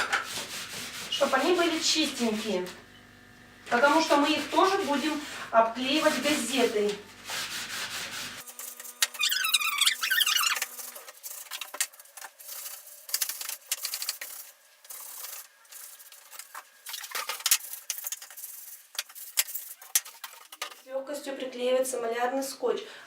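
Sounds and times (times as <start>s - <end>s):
damp cloth rubbing cardboard: 0.3s - 2.6s, 5.9s - 8.5s
short squeak: 9.1s - 10.7s.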